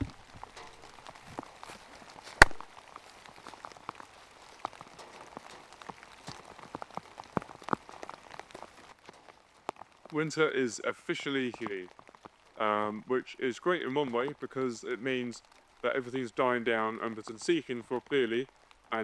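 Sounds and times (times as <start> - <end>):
rain drips and taps: 0.0 - 19.0
sharp loud tap: 2.4 - 2.7.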